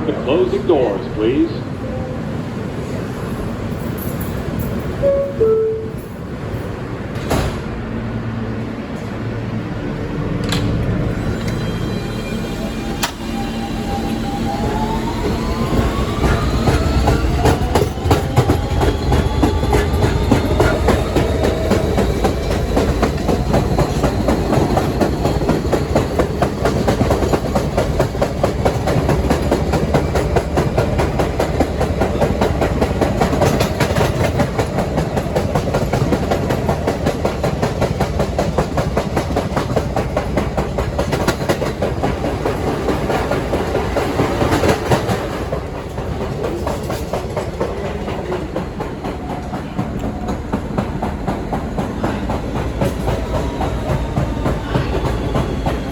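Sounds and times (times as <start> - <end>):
train rumble: 0.0 - 55.9
wheels clacking over rail joints: 15.6 - 55.9.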